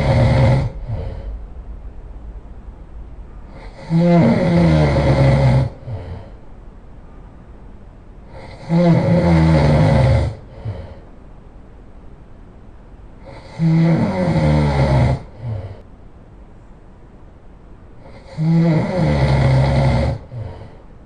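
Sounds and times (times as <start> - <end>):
person snoring: 0.0 - 1.4, 3.5 - 6.4, 8.3 - 11.1, 13.2 - 15.8, 18.0 - 20.8
soft breath: 0.0 - 1.8, 3.3 - 7.4, 10.3 - 11.3, 15.2 - 15.9, 20.1 - 21.0.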